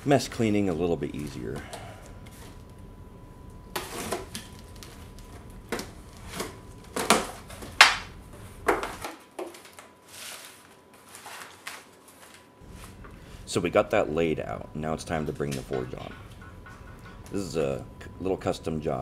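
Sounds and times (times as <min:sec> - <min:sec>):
cardboard scraping and rustling: 0:08.8 - 0:13.0.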